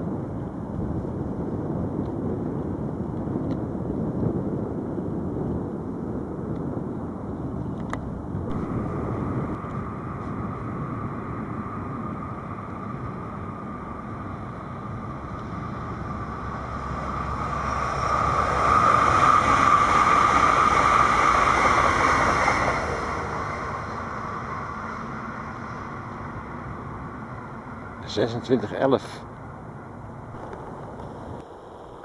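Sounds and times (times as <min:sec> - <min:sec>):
train passing rumbling hiss: 0:08.3 - 0:32.0.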